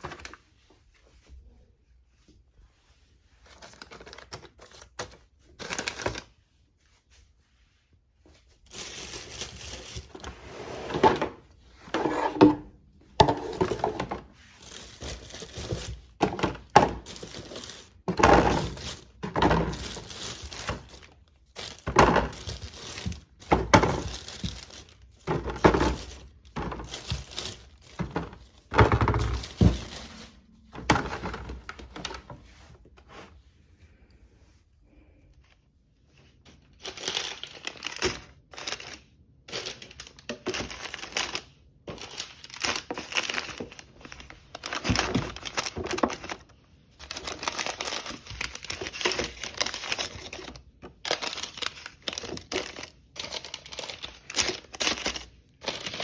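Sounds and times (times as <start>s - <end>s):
plastic crinkling and rustling: 2.7s - 7.3s, 8.0s - 33.4s, 35.4s - 56.0s
items set down knocking: 25.2s - 32.4s.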